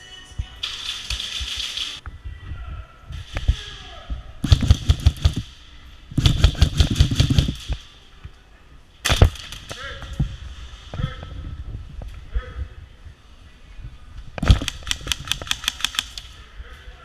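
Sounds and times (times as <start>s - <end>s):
airsoft guns firing: 4.4s - 5.6s, 6.2s - 7.9s, 9.0s - 9.9s, 14.4s - 16.4s.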